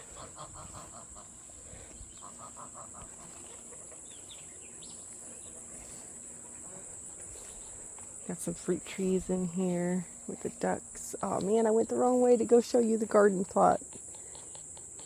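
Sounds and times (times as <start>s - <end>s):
poultry calling: 0.0s - 7.8s, 13.6s - 15.0s
high insect drone: 0.0s - 15.0s.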